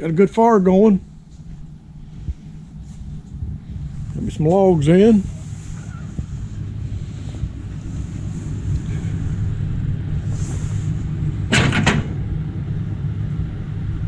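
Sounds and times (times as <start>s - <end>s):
low rumble: 0.0s - 14.0s
clatter of sharp knocks: 11.5s - 12.2s.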